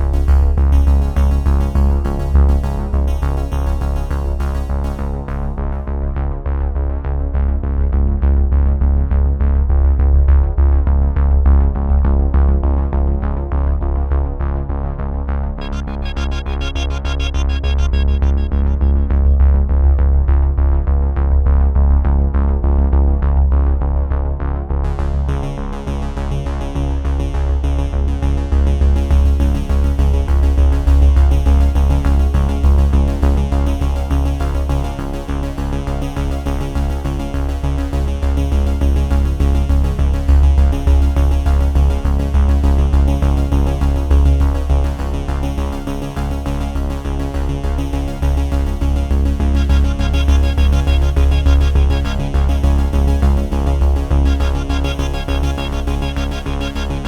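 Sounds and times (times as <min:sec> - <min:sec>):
electronic synthesizer music: 0:15.6 - 0:20.0, 0:48.4 - 0:57.0.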